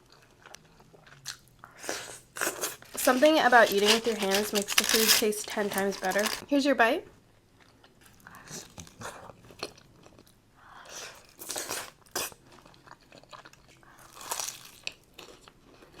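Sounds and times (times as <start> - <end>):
chewing crunchy food: 0.0 - 6.4, 7.6 - 16.0.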